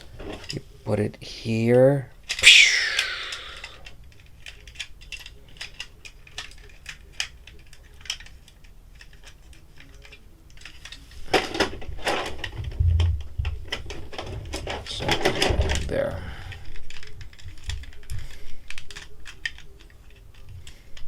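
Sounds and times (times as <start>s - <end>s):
plastic toy parts clicking: 3.4s - 11.4s, 16.8s - 21.0s.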